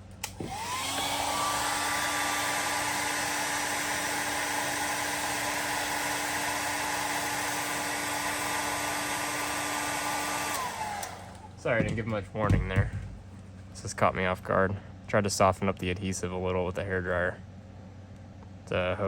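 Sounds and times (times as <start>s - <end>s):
hair dryer running: 0.2s - 11.6s.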